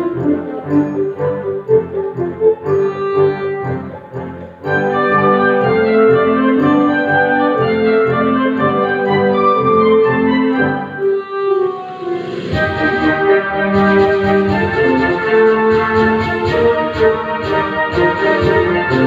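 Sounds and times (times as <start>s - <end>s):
electronic keyboard ensemble: 0.0s - 19.0s
cymbal-like wash: 11.8s - 16.2s.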